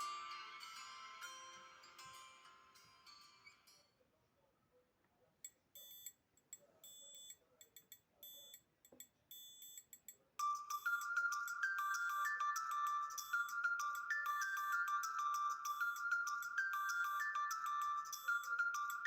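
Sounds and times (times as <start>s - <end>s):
electronic ringtone melody: 0.0s - 3.8s, 10.4s - 19.0s.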